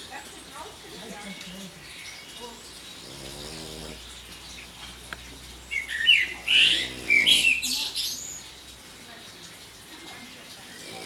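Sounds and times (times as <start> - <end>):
pet snoring: 2.9 - 4.2, 6.4 - 7.7, 10.7 - 11.0.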